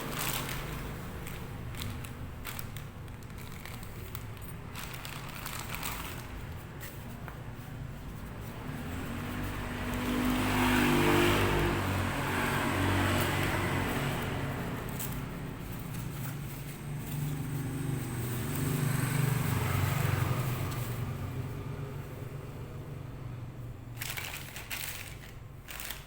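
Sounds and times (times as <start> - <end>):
vehicle engine running: 0.0 - 26.0
vehicles passing by: 0.0 - 26.0.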